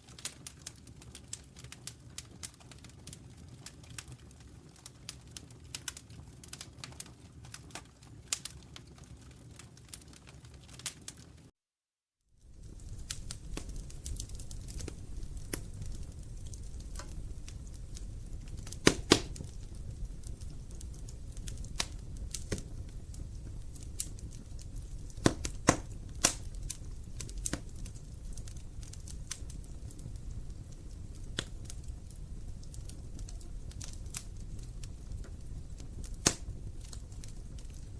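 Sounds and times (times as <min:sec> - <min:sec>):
fire flames rumbling: 0:00.0 - 0:11.4, 0:12.3 - 0:37.9
burning logs popping and snapping: 0:00.0 - 0:11.5, 0:12.4 - 0:37.9.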